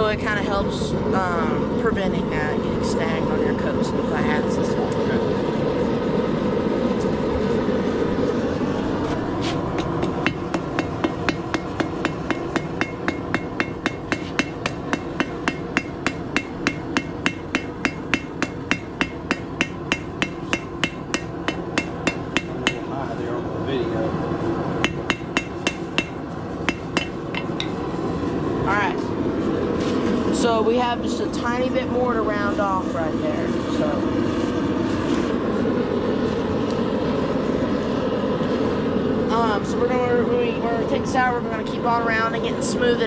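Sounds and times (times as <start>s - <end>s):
hammer ringing on anvil: 9.8s - 22.9s, 24.8s - 27.8s.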